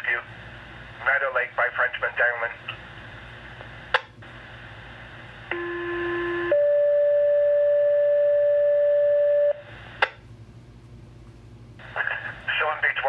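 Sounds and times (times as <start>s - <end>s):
radio hiss: 0.0s - 5.4s, 11.8s - 13.0s.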